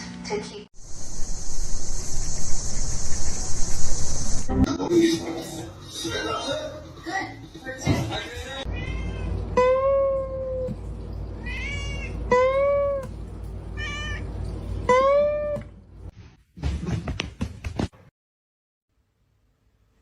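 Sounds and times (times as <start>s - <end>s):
low background hum: 8.6s - 16.1s
cat meowing: 8.7s - 10.7s, 11.4s - 13.0s, 13.8s - 14.3s.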